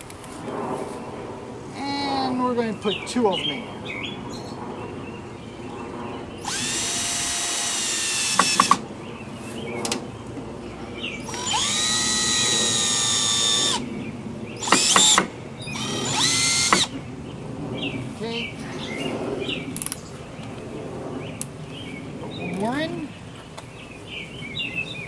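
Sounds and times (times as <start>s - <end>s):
power drill driving screws: 6.4s - 8.8s, 11.2s - 13.8s, 14.6s - 16.9s
screw seating clicks: 8.3s - 8.8s.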